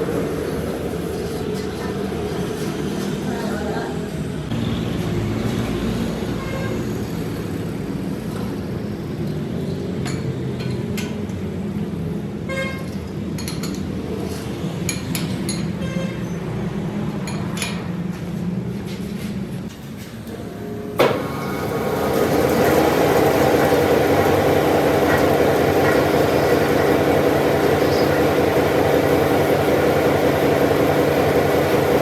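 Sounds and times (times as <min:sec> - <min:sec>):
machine humming: 0:20.5 - 0:32.0.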